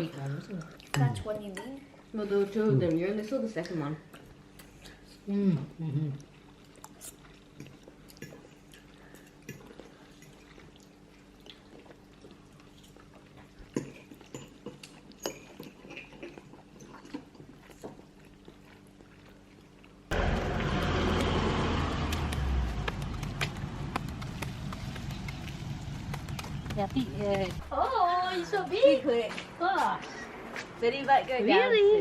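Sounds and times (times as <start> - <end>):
low hum: 20.1 - 31.0.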